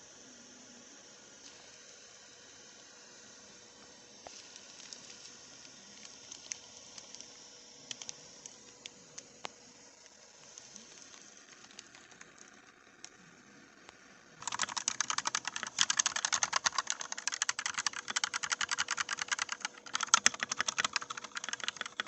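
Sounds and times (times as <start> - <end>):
keyboard clicks and ticks: 14.4 - 22.0.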